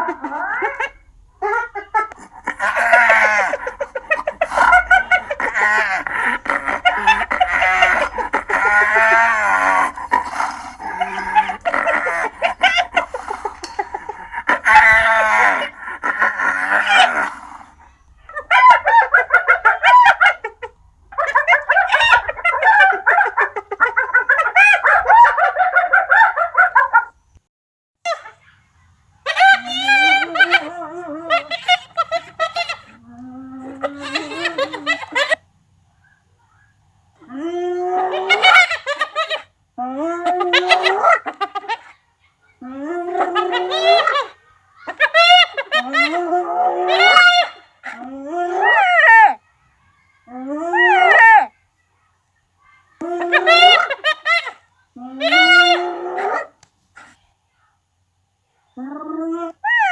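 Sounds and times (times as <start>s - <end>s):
hyena calling: 0.0s - 25.4s.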